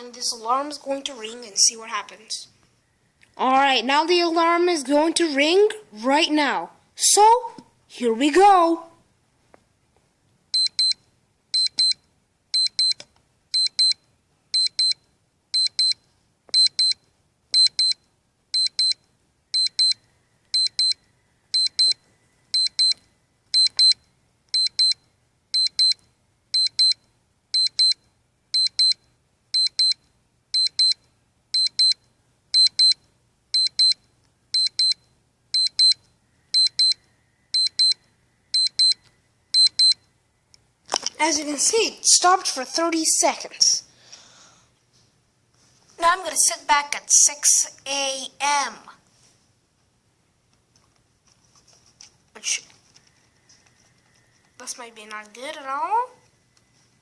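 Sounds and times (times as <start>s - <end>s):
alarm clock beeping: 10.5s - 29.0s, 29.6s - 30.0s, 30.6s - 31.0s, 31.6s - 33.0s, 33.6s - 35.0s, 35.6s - 40.0s.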